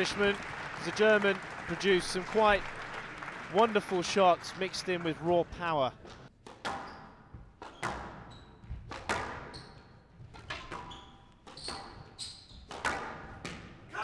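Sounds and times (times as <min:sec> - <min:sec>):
shoes squeaking on court floor: 0:06.0 - 0:13.6
squash ball struck by rackets: 0:06.4 - 0:09.7, 0:12.7 - 0:13.8.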